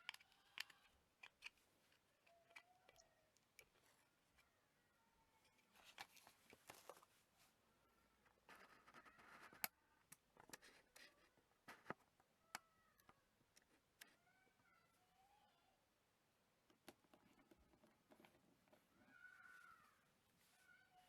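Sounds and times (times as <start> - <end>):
handling clicks and taps: 0.0 - 4.5, 16.6 - 18.8.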